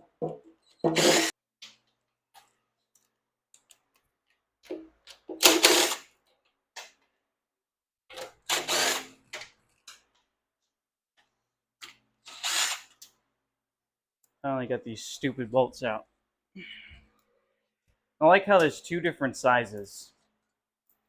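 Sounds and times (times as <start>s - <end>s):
power tool bursts: 0.9s - 1.3s, 5.4s - 6.0s, 8.5s - 9.1s, 12.3s - 12.9s.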